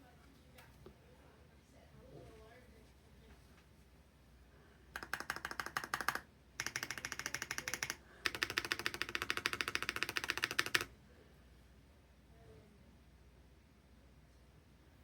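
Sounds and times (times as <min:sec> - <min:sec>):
mechanical keyboard typing: 0:05.0 - 0:10.9.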